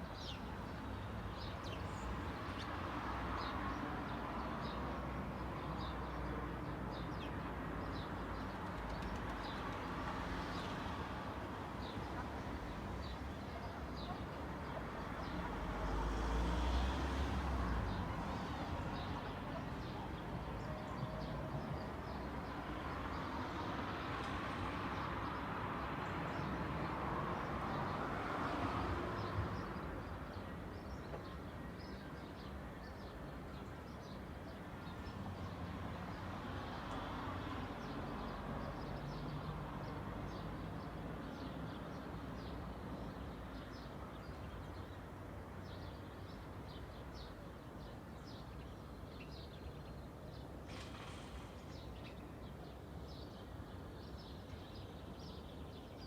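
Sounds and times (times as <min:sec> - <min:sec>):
cars passing: 0:15.2 - 0:19.4.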